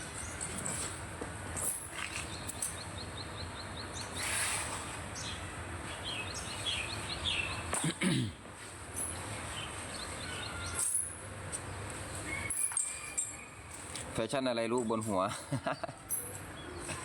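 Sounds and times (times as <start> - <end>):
bird chirping: 2.0 - 7.8, 9.0 - 13.8.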